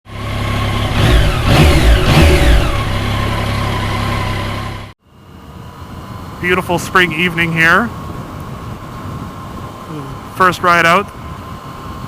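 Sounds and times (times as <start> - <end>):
motorcycle engines revving: 0.1 - 5.0.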